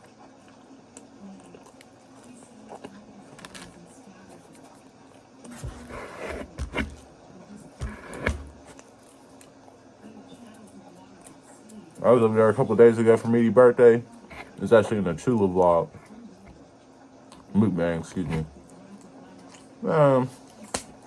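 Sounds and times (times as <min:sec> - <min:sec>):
chewing: 0:00.0 - 0:03.8
knocking sounds: 0:07.8 - 0:08.7.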